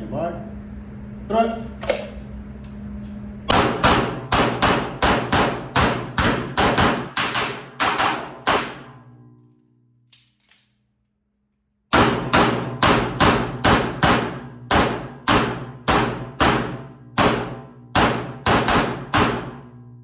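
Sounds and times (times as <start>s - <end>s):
pistol gunshots: 3.5s - 9.0s, 11.9s - 19.7s.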